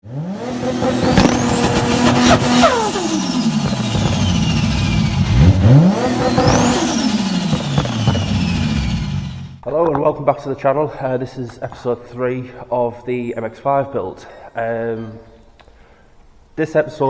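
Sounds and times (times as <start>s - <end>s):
car engine revving: 0.0s - 9.6s
high whine: 0.5s - 9.7s.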